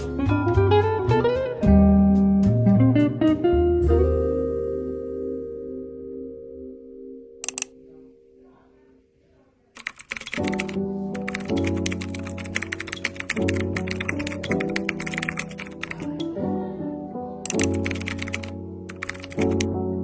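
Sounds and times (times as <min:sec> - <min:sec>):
fast clicking texture: 0:09.8 - 0:16.1, 0:17.5 - 0:19.7.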